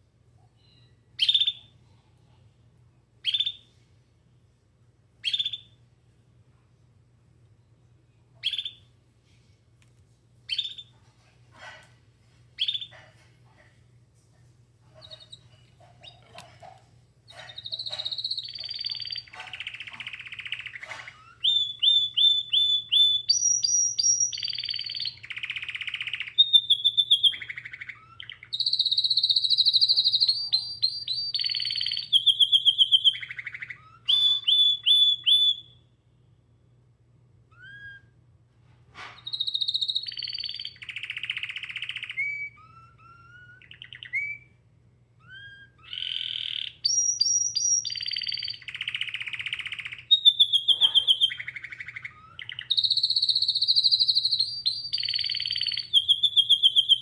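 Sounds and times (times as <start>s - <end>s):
canary singing trills: 0.6s - 1.7s, 3.2s - 3.7s, 5.2s - 5.8s, 8.4s - 8.9s, 10.5s - 10.9s, 12.6s - 13.2s, 14.9s - 16.7s, 17.3s - 35.8s, 39.2s - 44.6s, 45.2s - 57.0s.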